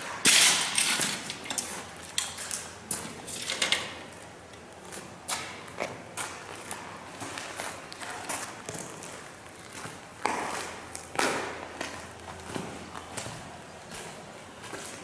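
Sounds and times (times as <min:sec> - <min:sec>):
metallic clattering and scraping: 0:00.2 - 0:04.2.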